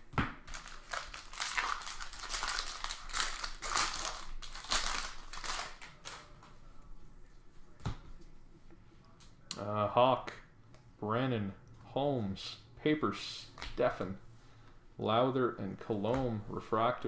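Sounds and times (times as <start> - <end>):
foil wrapper crinkling and tearing: 0.5 - 6.4.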